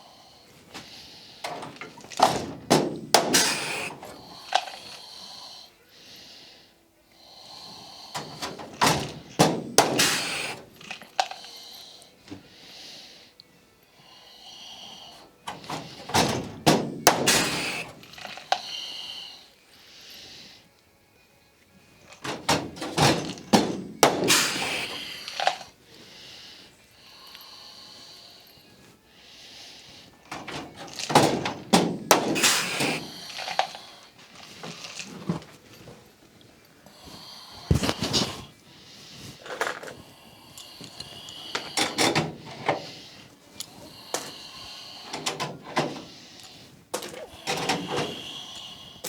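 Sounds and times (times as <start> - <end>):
knocking and rattling sheet metal: 1.5 - 3.7, 22.2 - 24.6, 30.3 - 33.0.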